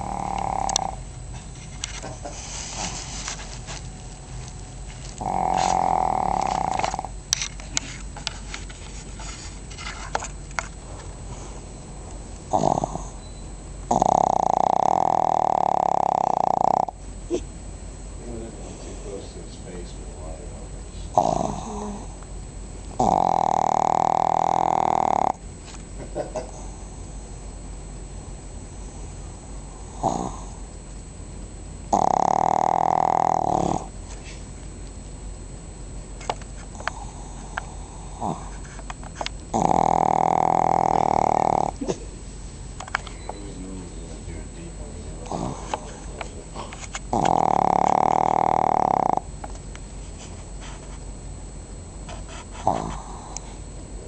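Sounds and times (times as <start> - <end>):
dog snoring: 0.0 - 1.8, 5.0 - 7.8, 12.5 - 17.4, 20.9 - 22.2, 22.9 - 25.4, 28.7 - 30.7, 31.9 - 34.4, 36.6 - 41.9, 45.2 - 49.3, 52.2 - 53.7.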